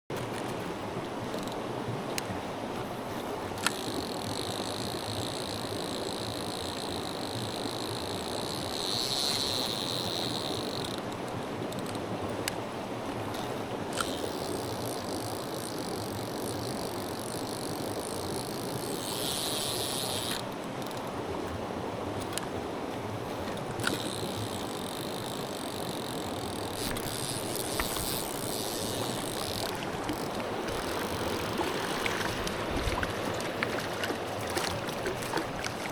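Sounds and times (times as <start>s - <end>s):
stream water rushing: 0.1s - 35.9s
thin high whir: 23.8s - 32.3s.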